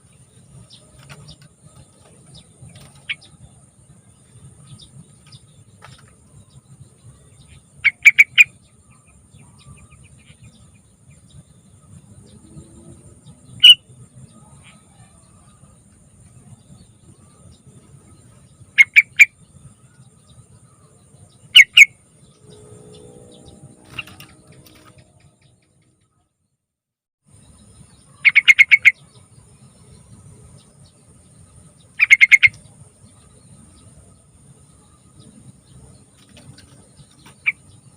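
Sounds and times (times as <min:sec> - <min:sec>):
bulbul chirping: 0:07.4 - 0:08.6, 0:13.6 - 0:13.8, 0:18.8 - 0:19.3, 0:21.6 - 0:21.9, 0:28.2 - 0:29.0, 0:32.0 - 0:32.7.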